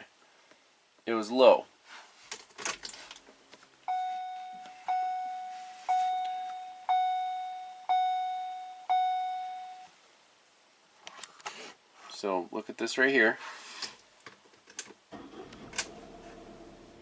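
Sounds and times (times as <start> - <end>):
dashboard warning chime: 3.9 - 9.9.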